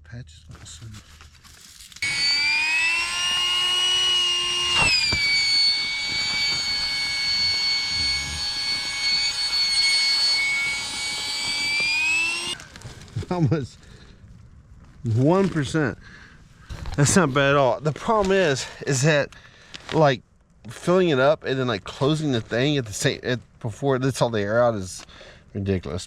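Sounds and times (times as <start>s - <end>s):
electric air pump whining: 1.9s - 12.8s.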